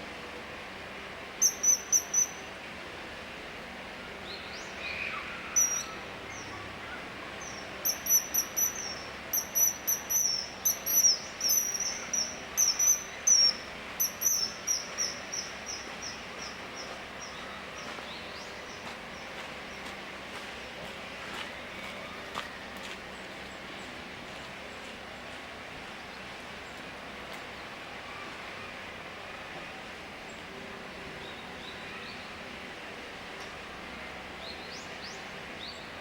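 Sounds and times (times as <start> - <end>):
kingfisher calling shrill notes: 1.4 - 2.5, 5.4 - 6.0, 7.8 - 16.6.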